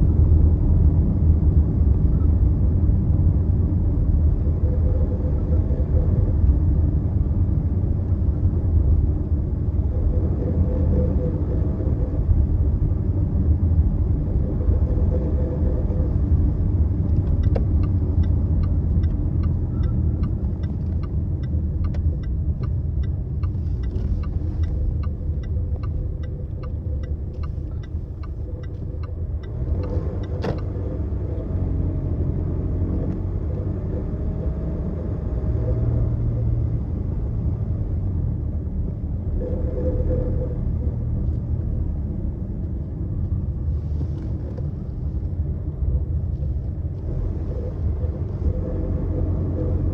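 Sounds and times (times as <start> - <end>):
car road rumble: 0.0 - 49.9
even ticking: 17.2 - 30.8.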